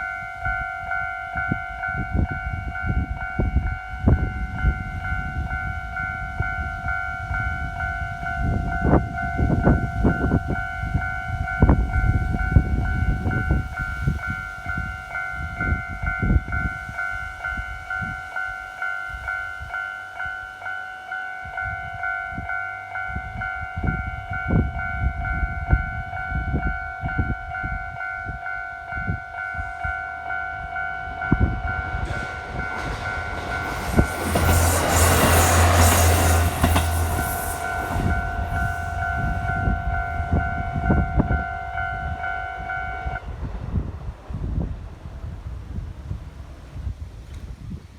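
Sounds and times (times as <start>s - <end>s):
level crossing warning bell: 0.0s - 43.3s
diesel railcar approaching: 0.0s - 47.8s
low rumbling knocks: 31.3s - 41.4s.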